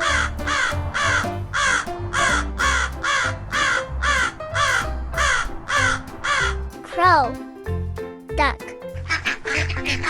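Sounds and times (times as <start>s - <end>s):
crow cawing: 0.0s - 6.4s.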